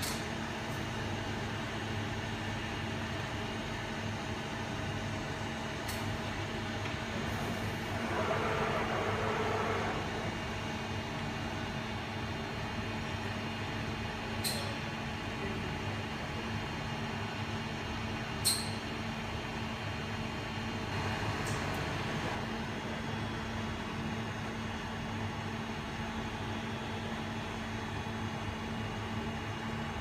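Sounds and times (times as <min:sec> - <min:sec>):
machine electrical hum: 0:00.0 - 0:30.0
machine whirring: 0:07.5 - 0:10.7.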